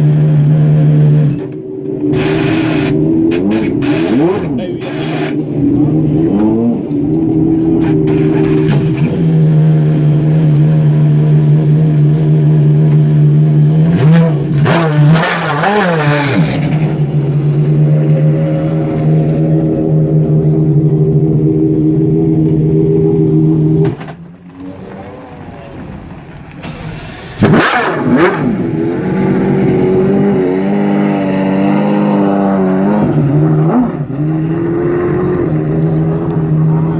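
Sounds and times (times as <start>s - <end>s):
car engine idling: 0.0s - 14.7s, 15.6s - 36.9s
engine revving: 0.0s - 25.5s, 26.6s - 36.9s.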